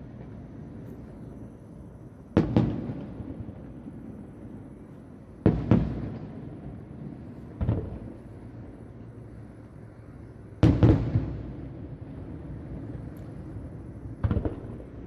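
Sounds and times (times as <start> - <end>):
distant fireworks bangs: 10.6 - 11.6, 12.7 - 15.0.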